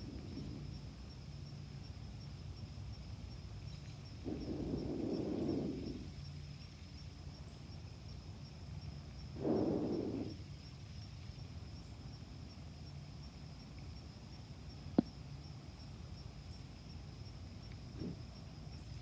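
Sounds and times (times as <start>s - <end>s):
faint low hum: 0.0s - 19.0s
slow breaths: 4.2s - 6.2s, 9.4s - 10.4s.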